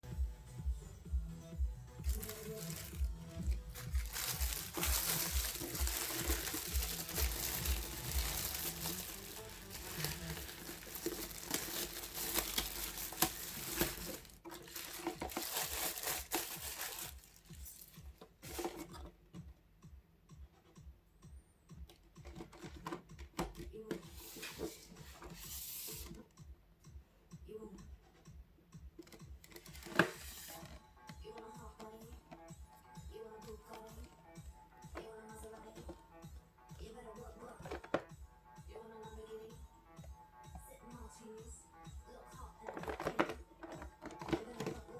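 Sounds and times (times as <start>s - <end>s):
packaging crinkling and tearing: 2.0s - 18.0s.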